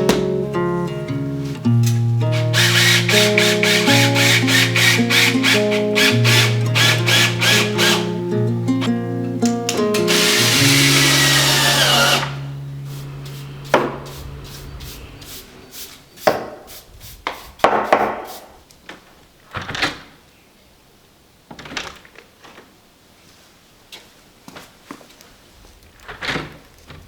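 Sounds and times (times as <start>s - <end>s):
power drill running: 2.3s - 8.2s, 9.9s - 15.6s
sharp knocks on wood: 17.6s - 18.3s.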